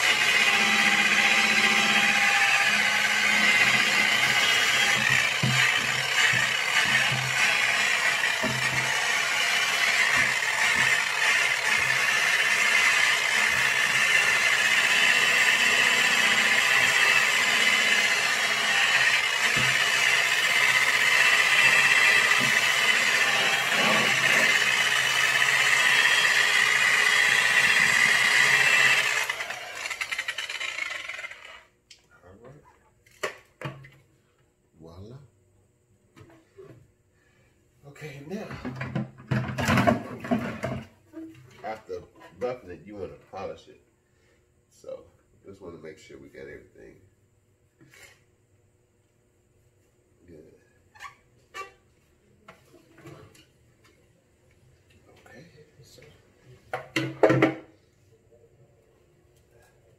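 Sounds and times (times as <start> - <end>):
electric polisher running: 0.0 - 31.4.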